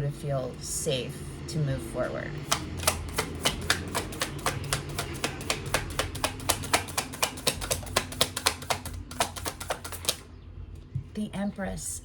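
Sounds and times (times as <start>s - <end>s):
cards being shuffled: 2.4s - 10.2s.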